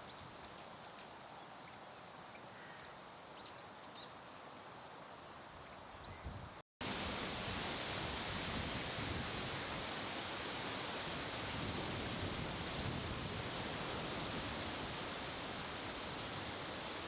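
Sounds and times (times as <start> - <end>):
wind: 0.0 - 17.0
rain: 6.8 - 17.0.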